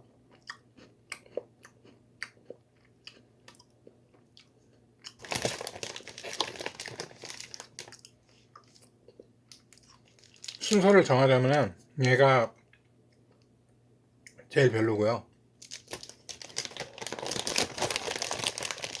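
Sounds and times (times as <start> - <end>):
biscuit crunching and chewing: 0.0 - 10.7, 15.6 - 19.0.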